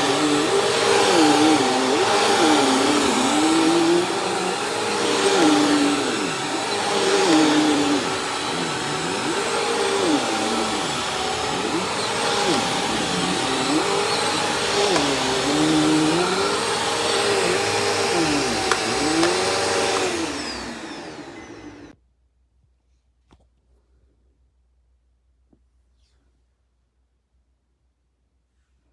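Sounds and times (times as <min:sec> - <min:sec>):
upright vacuum running on carpet: 0:00.0 - 0:21.9.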